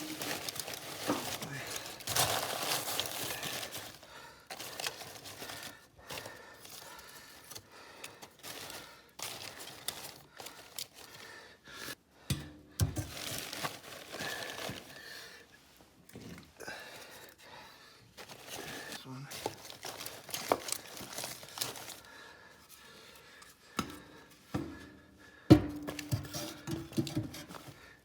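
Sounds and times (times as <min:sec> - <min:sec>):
paper crumpling: 0:00.0 - 0:11.4, 0:13.0 - 0:15.3, 0:18.2 - 0:22.1.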